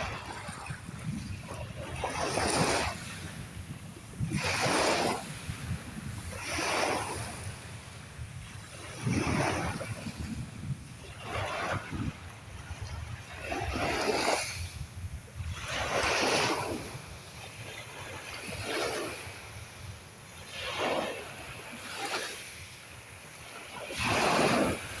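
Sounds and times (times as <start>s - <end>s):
sea waves breaking: 0.0s - 25.0s.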